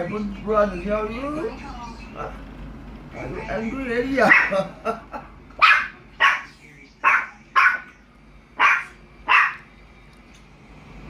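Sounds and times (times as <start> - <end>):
dog barking: 4.2 - 4.7, 5.6 - 8.0, 8.6 - 9.7.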